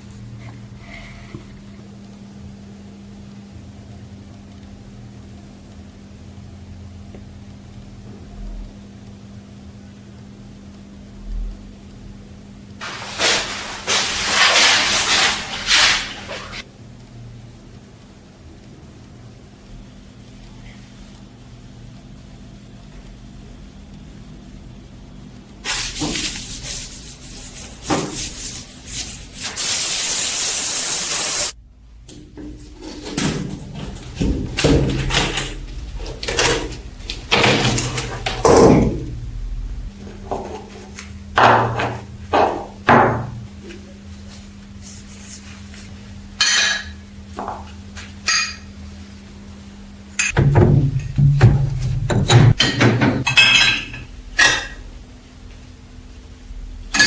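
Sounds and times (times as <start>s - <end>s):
hissing spray: 25.6s - 31.6s
metal parts knocking and clunking: 32.1s - 39.2s, 50.2s - 54.8s.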